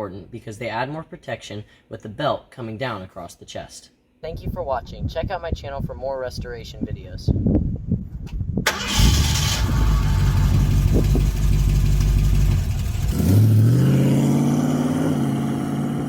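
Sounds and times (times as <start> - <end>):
car engine revving: 8.7 - 16.0.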